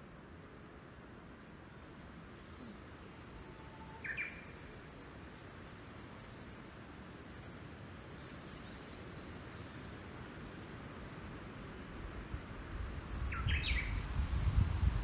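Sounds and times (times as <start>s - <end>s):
bird chirp: 2.4s - 4.6s, 13.3s - 14.0s
wind noise on microphone: 12.0s - 15.0s.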